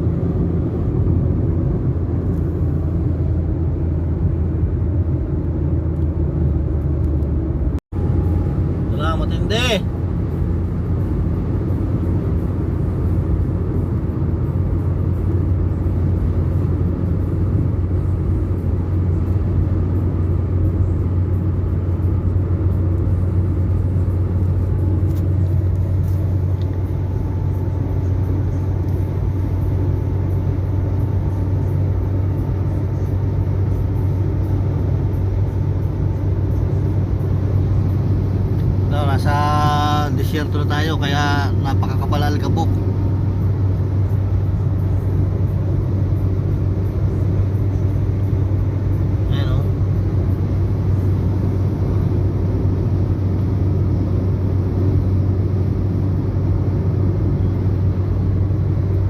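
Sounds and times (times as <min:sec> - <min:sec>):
vehicle engine and road noise: 0:00.0 - 0:59.0.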